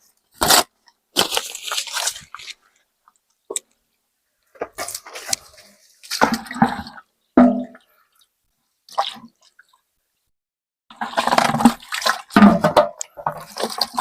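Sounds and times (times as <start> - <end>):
wet sloshing and squelching: 10.9 - 14.0.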